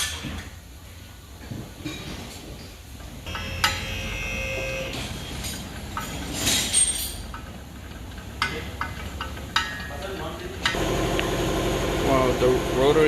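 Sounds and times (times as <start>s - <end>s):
low shop hum: 0.0s - 13.0s.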